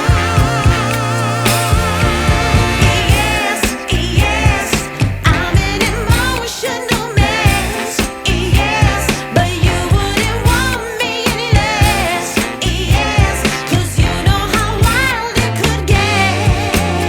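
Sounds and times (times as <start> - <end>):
pop song with vocals: 0.0 - 17.0.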